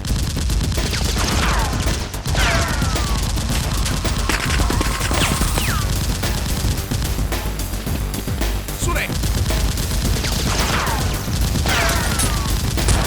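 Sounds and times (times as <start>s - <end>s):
rapid gunfire: 0.0s - 13.0s
ricochet whines: 0.9s - 6.8s, 9.6s - 13.0s.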